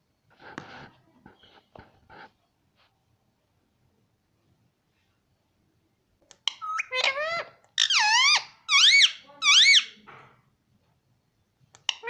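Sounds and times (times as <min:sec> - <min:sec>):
parrot shrill calls: 0:06.5 - 0:09.9.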